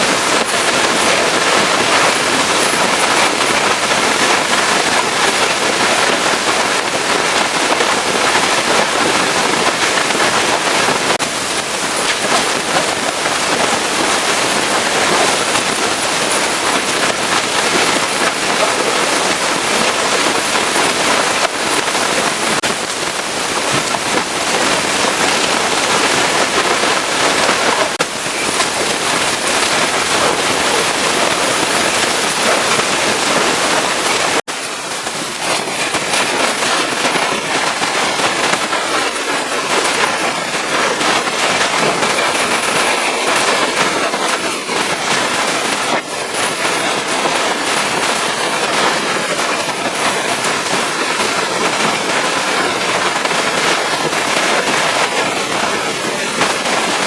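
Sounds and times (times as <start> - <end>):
pressure washer spraying water: 0.0 - 57.0.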